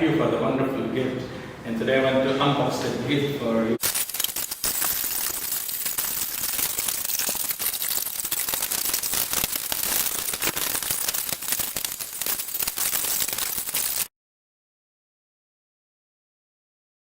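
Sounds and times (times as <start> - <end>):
wrapping paper crinkling: 3.8 - 14.1.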